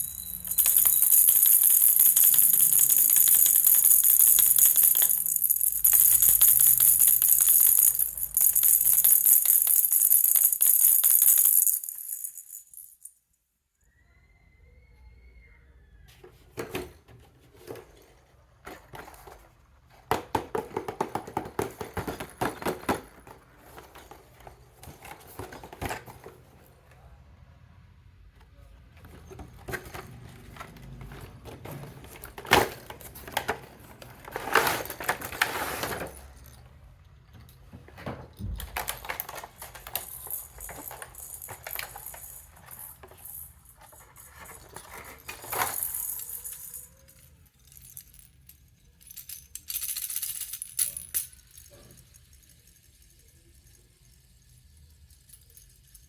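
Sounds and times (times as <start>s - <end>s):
baby rattle shaking: 0.0s - 13.1s, 29.3s - 36.6s, 38.6s - 56.0s.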